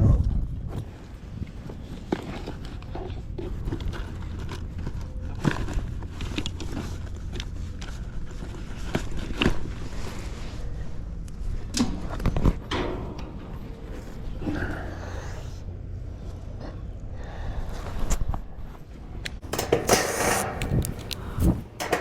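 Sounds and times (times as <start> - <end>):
steady low hum: 9.7 - 22.0
metal panels clicking and knocking: 11.8 - 14.4, 19.4 - 22.0.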